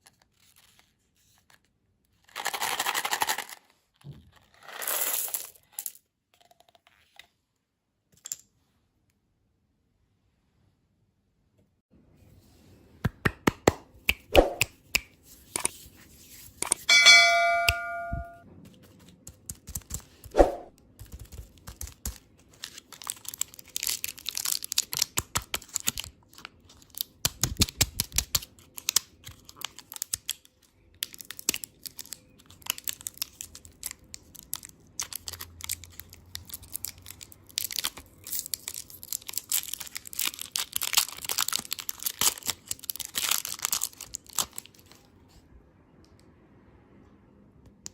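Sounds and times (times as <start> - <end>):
short ringing ding: 16.9 - 18.4
wrappers crinkling and tearing: 21.5 - 45.1.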